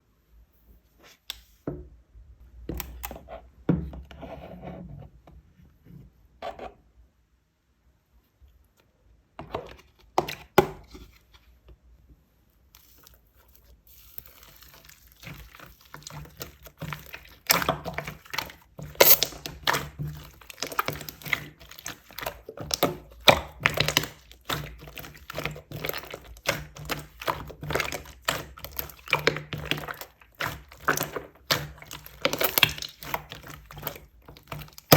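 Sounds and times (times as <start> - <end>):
slime crackling pops: 18.9 - 20.0.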